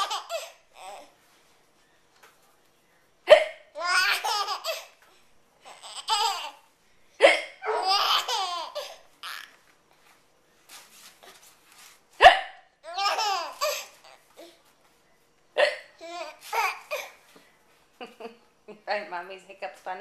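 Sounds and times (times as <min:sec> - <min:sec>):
baby laughing: 0:00.0 - 0:01.1, 0:03.3 - 0:05.0, 0:05.6 - 0:09.6, 0:12.8 - 0:14.2, 0:15.6 - 0:17.2
woman hiccuping: 0:03.3 - 0:03.6, 0:07.2 - 0:07.8, 0:12.2 - 0:12.6, 0:15.6 - 0:16.0.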